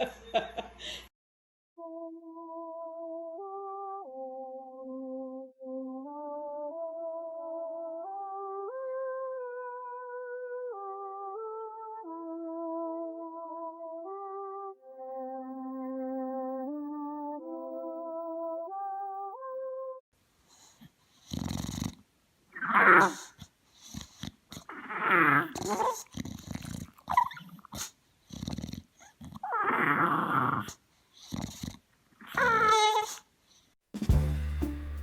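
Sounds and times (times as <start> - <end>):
dog growly howling: 24.7 - 26.0, 29.2 - 30.8.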